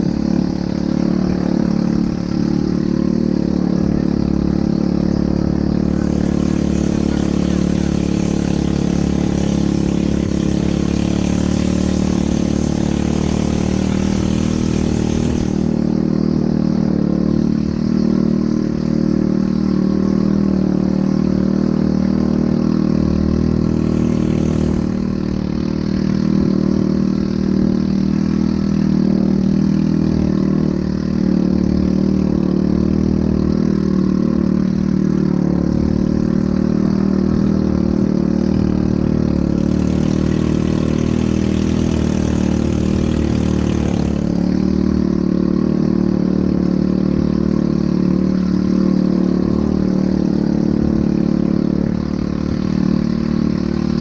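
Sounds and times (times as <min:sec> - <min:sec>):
atv engine running: 0:00.0 - 0:54.0
rushing hiss: 0:06.0 - 0:16.0.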